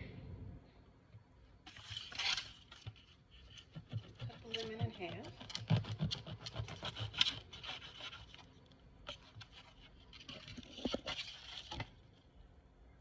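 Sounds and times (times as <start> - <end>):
knife cutting a lemon: 1.7 - 8.5.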